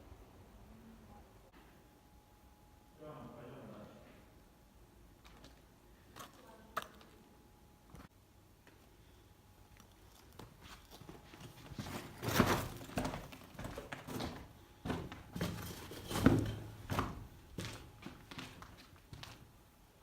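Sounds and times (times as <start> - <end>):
footsteps with knocks and thuds: 9.8 - 19.5.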